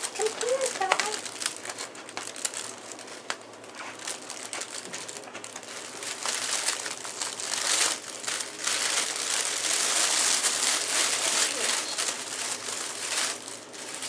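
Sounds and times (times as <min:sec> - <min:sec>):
rustling and crinkling: 0:00.0 - 0:14.0.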